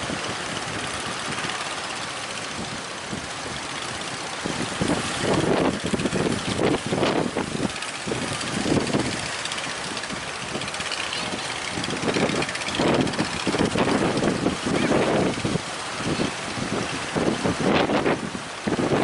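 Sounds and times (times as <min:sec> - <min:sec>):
choppy sea: 0:00.0 - 0:19.0
wind gusting on microphone: 0:00.0 - 0:19.0.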